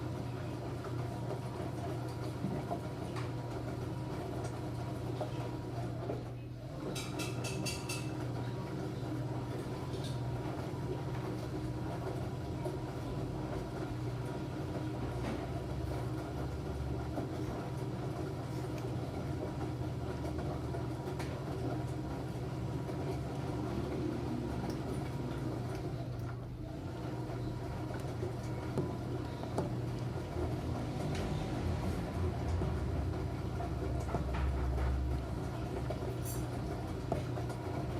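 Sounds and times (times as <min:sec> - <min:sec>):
washing machine running: 0:00.0 - 0:37.9.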